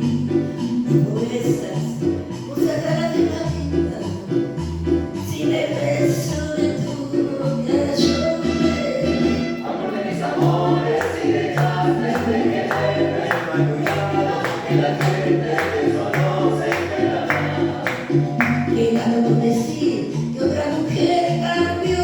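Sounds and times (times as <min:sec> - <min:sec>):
song with singing and beat: 0:00.0 - 0:22.0.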